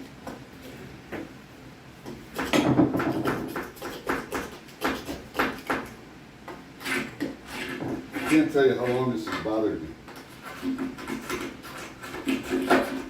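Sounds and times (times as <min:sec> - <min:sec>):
tool scraping out caulk: 0:06.8 - 0:13.0.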